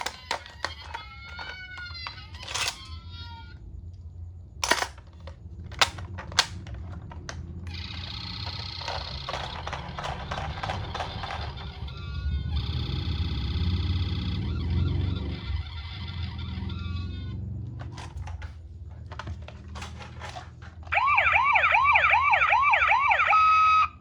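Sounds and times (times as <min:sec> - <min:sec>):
sharp clicks: 0:00.0 - 0:02.9, 0:04.6 - 0:07.8.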